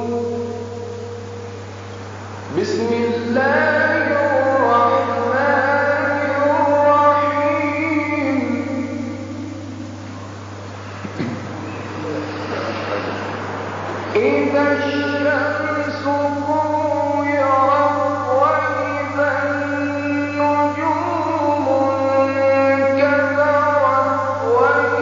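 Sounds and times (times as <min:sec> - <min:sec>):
man reciting melodically: 0:00.0 - 0:00.8, 0:02.5 - 0:09.8, 0:14.1 - 0:25.0
steady low hum: 0:00.0 - 0:25.0.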